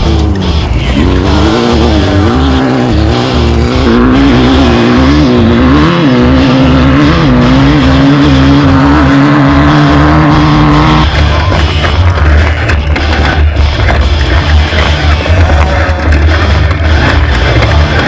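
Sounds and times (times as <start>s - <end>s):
race car engine running hard: 0.0s - 18.0s.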